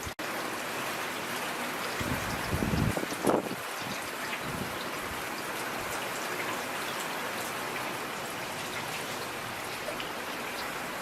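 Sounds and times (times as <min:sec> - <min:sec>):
steady rain falling: 0:00.0 - 0:11.0
low rumble of thunder: 0:02.0 - 0:03.6.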